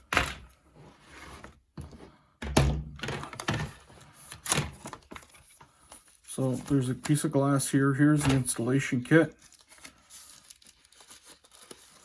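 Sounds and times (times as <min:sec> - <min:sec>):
objects thunking on a table: 0:01.8 - 0:03.8.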